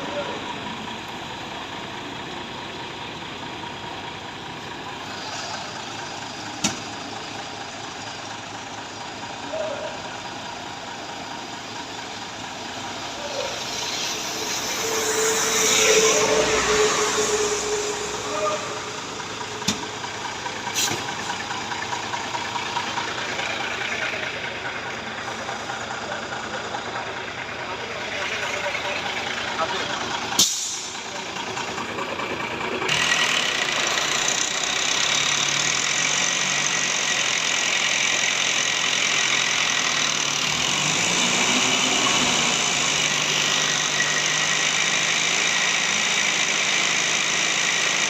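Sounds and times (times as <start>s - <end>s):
heavy vehicle engine running: 0.0s - 48.0s
steady whine: 13.0s - 20.7s.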